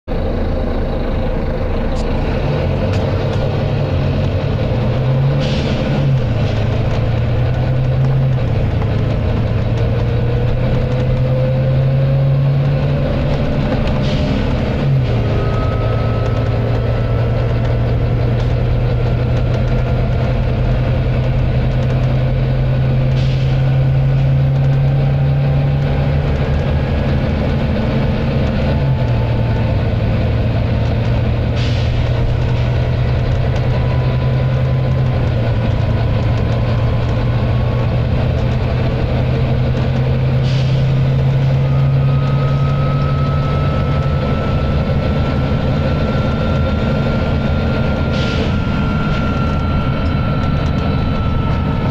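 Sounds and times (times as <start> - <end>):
bus diesel engine accelerating: 0.0 - 51.9
thin whine: 11.1 - 20.5, 40.1 - 51.9.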